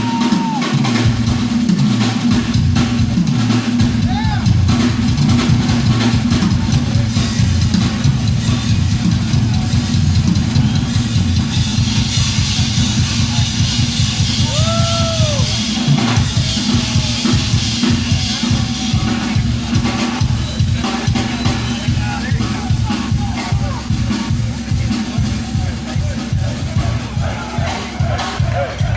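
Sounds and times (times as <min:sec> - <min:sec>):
crowd shout or whistle: 0:00.0 - 0:00.8, 0:08.4 - 0:13.5, 0:14.2 - 0:23.8
rock drum solo: 0:00.0 - 0:28.9.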